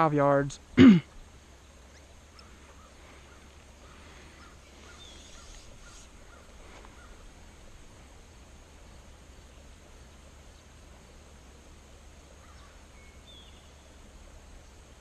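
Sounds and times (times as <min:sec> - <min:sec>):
distant birds chirping: 0:00.0 - 0:15.0.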